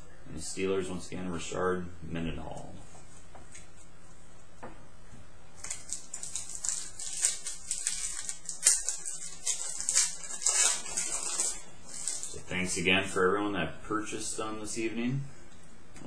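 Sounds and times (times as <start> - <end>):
steady low hum: 0.0 - 16.0
cards and wrappers rustling: 5.6 - 12.7.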